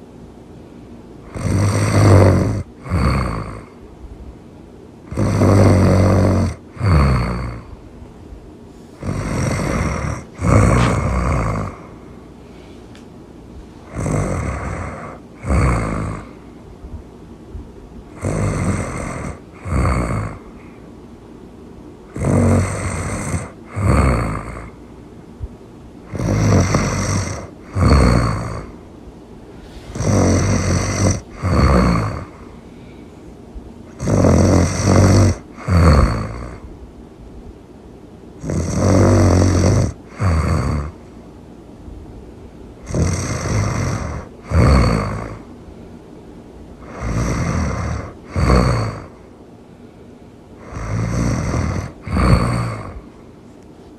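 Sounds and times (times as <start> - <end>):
loud snoring: 1.2 - 3.8, 5.0 - 7.8, 9.0 - 12.1, 13.8 - 16.5, 18.1 - 20.8, 22.1 - 24.8, 26.0 - 28.8, 29.5 - 32.6, 33.9 - 36.6, 38.4 - 41.1, 42.8 - 45.5, 46.8 - 49.3, 50.6 - 53.1.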